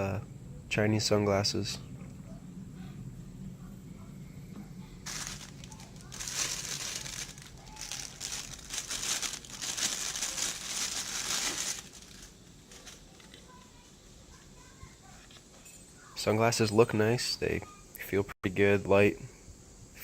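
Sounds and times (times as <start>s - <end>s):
plastic packaging crinkling: 5.0s - 13.5s.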